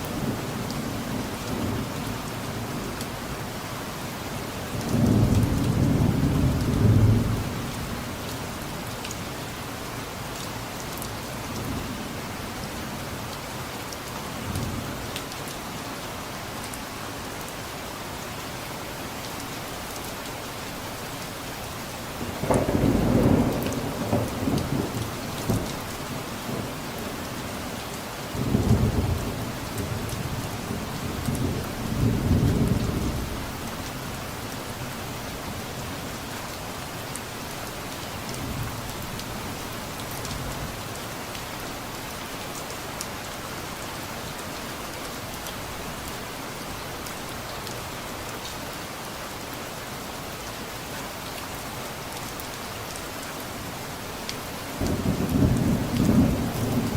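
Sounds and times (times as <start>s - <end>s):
steady rain falling: 0.0s - 56.9s
distant thunder rumbling: 22.2s - 25.8s, 54.8s - 56.9s.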